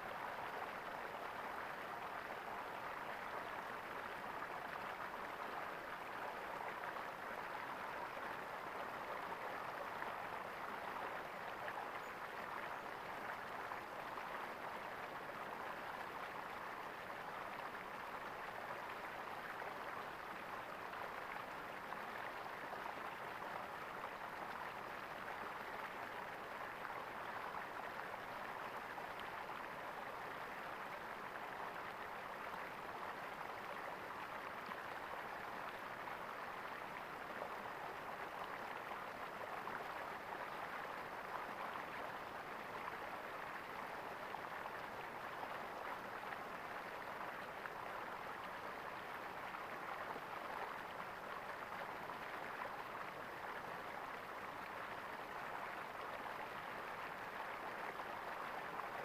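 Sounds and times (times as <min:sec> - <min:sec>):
water gurgling in a stream: 0:00.0 - 0:59.0.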